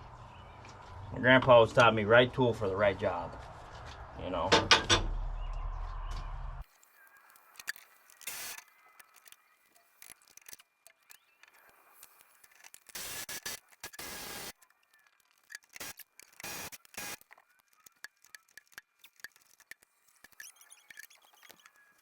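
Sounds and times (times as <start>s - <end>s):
hand tools clicking on metal: 15.3s - 21.7s.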